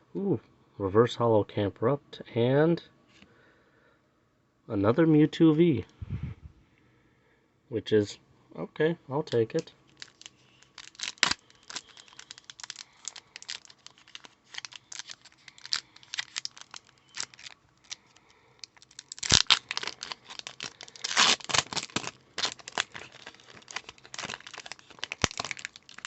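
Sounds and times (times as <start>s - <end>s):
foil wrapper crinkling and tearing: 9.5s - 26.0s.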